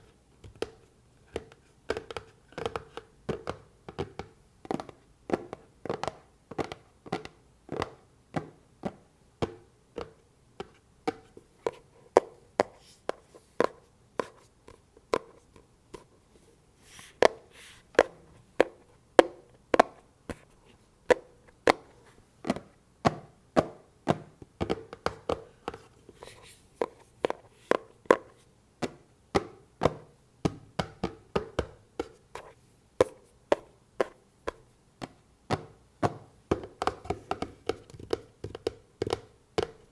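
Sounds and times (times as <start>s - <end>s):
fingers tapping on a box: 26.8s - 39.9s.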